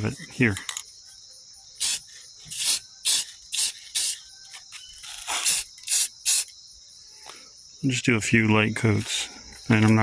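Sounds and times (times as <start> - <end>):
crickets chirping: 0.0 - 10.0
aerosol spray hissing bursts: 1.8 - 4.2, 5.3 - 6.5.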